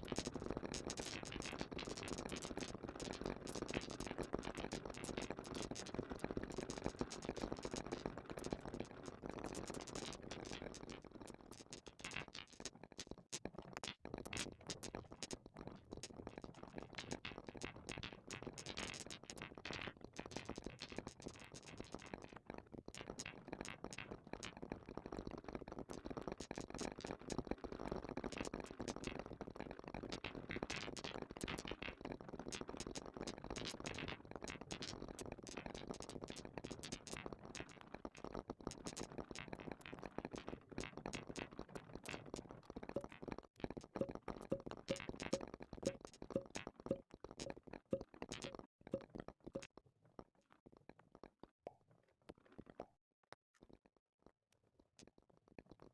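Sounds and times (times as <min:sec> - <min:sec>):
marbles rolling on plastic track: 0:00.0 - 0:24.6, 0:30.1 - 0:37.9, 0:38.7 - 0:47.6.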